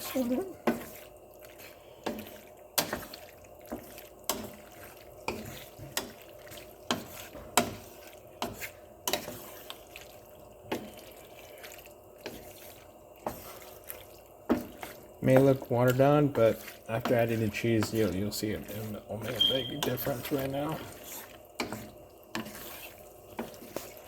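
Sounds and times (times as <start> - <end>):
pasta squelching in sauce: 0.0 - 24.0
utensil clacking against pan: 2.0 - 9.8, 14.5 - 24.0.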